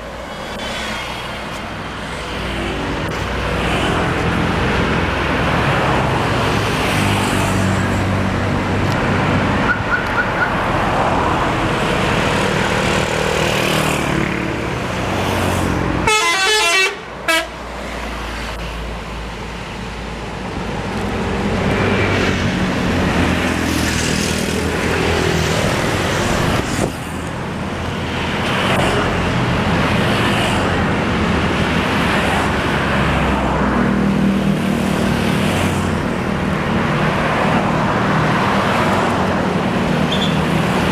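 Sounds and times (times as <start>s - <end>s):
bus engines running: 0.0s - 40.9s
musical bus horn: 16.0s - 17.6s.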